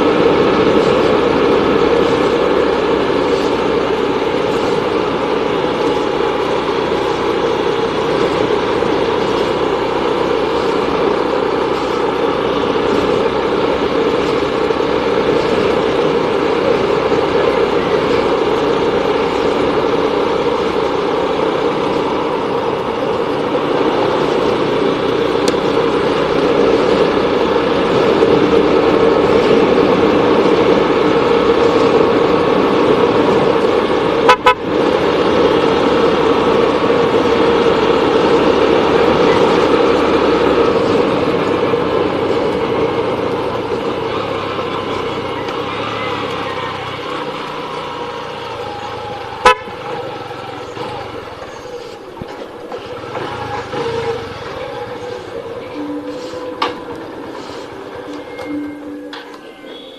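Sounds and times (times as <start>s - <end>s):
road and wind noise: 0.0s - 59.9s
vehicle engine running: 0.0s - 59.9s
horn toots: 34.2s - 34.8s, 49.4s - 50.0s, 57.4s - 59.9s.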